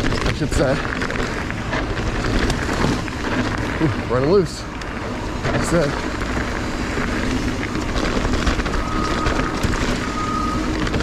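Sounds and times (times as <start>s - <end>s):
bike rattling: 0.0s - 11.0s
tyre noise on trail: 0.0s - 11.0s
disc brakes squealing: 5.0s - 11.0s.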